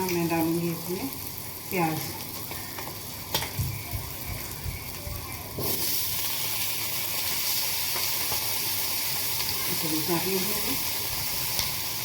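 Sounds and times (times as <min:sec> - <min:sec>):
onions sizzling in pan: 0:00.0 - 0:12.0.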